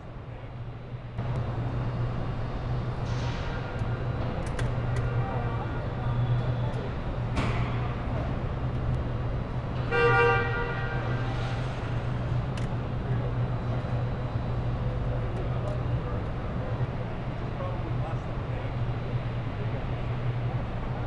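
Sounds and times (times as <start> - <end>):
low hum of machinery: 0.0 - 21.0
short horn toot: 9.8 - 11.7.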